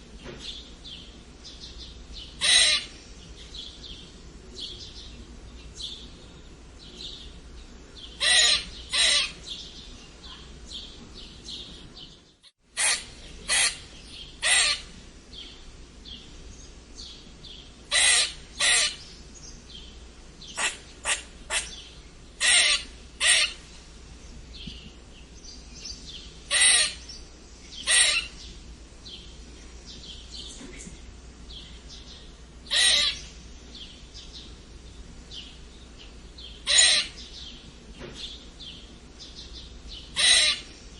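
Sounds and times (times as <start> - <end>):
squirrel squeaking: 2.4 - 2.9, 8.2 - 9.4, 12.8 - 13.8, 14.4 - 14.9, 17.9 - 19.0, 22.4 - 23.6, 26.5 - 27.1, 27.8 - 28.4, 32.7 - 33.2, 36.6 - 37.2, 40.1 - 40.7
faint squirrel chirps: 32.7 - 33.3, 40.1 - 40.7.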